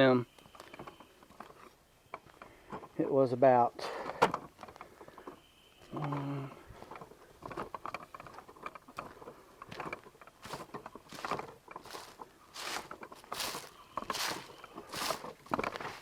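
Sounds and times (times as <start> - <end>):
footsteps on dry ground cover: 5.8 - 16.0.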